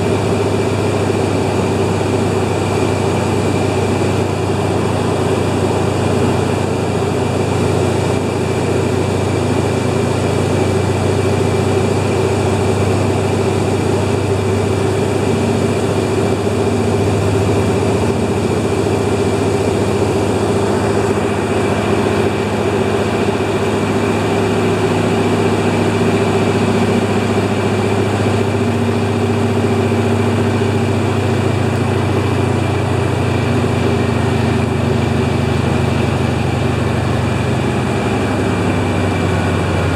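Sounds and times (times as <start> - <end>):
aircraft engine and propeller: 0.0 - 39.9.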